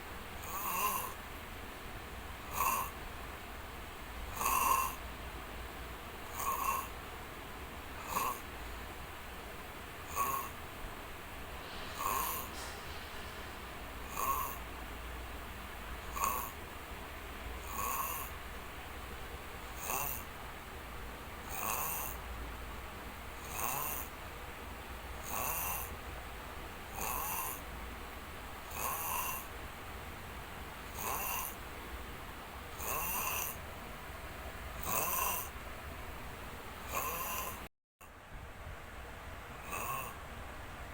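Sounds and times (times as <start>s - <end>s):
short snores: 0.4s - 1.2s, 2.5s - 3.0s, 4.3s - 5.0s, 6.3s - 7.0s, 8.0s - 8.5s, 10.1s - 10.6s, 11.6s - 14.7s, 16.0s - 16.6s, 17.6s - 18.4s, 19.8s - 20.3s, 21.5s - 22.2s, 23.4s - 24.1s, 25.2s - 25.9s, 26.9s - 27.6s, 28.7s - 29.5s, 30.9s - 31.6s, 32.8s - 33.6s, 34.8s - 35.5s, 36.9s - 37.7s, 39.6s - 40.2s.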